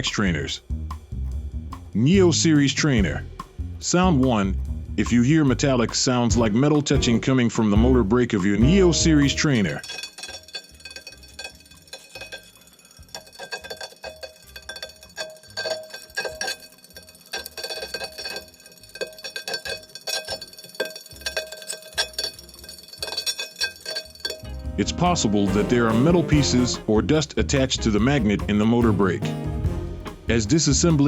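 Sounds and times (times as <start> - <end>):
metallic ticking and clinking: 8.4 - 24.6.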